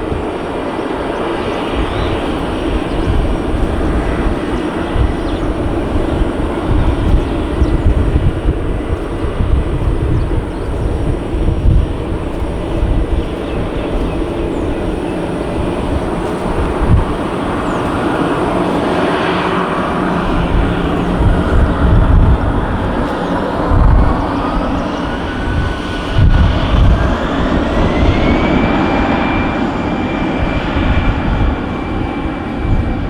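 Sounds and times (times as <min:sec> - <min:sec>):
jet engines running: 0:00.0 - 0:33.0.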